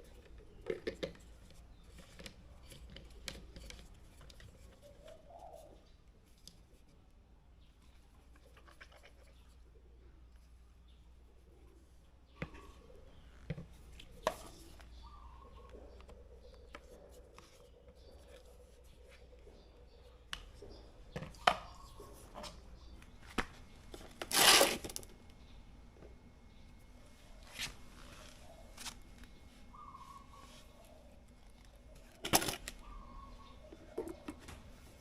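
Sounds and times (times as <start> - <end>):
objects clicking and knocking: 0.1 - 4.6, 31.9 - 32.8.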